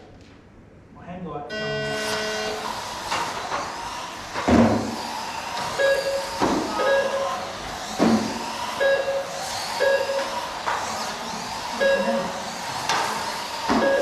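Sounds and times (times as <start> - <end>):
rc trucks running: 1.7 - 14.0
cars whooshing past: 2.2 - 14.0
short repeated steady tones: 5.8 - 7.5, 8.7 - 10.6, 11.7 - 12.5, 13.7 - 14.0.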